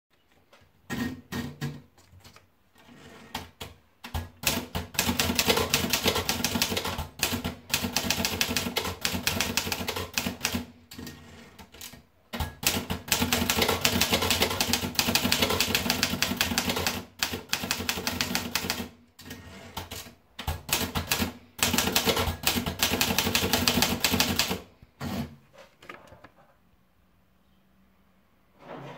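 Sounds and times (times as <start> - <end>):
manual typewriter typing: 4.0 - 25.3.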